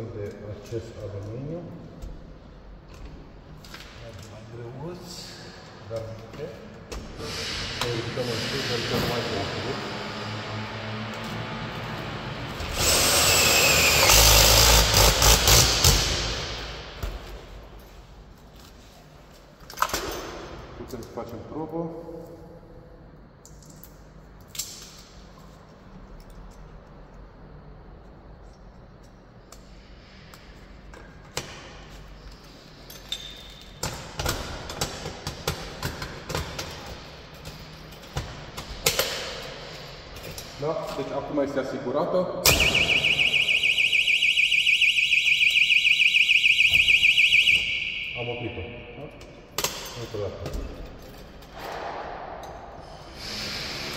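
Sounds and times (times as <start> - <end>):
short high beep: 42.5 - 49.1.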